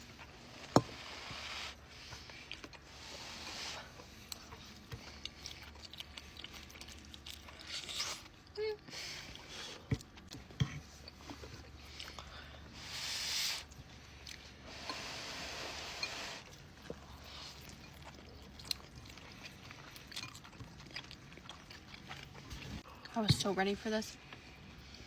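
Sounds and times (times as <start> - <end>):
people chewing and biting: 2.0 - 12.8, 15.9 - 23.2.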